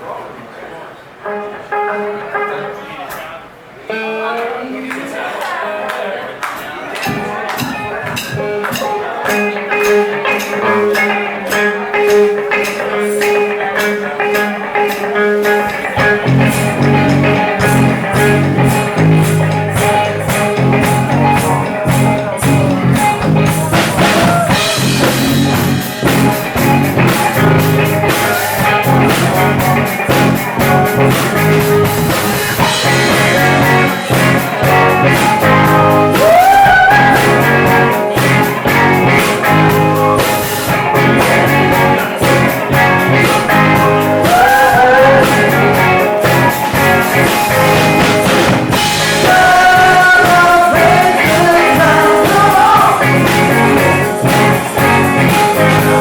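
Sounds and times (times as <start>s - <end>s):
guitar: 1.1s - 56.0s
drum kit: 7.0s - 56.0s
bass: 14.3s - 56.0s
person singing lead vocals: 32.1s - 39.2s, 40.2s - 47.6s, 48.7s - 56.0s.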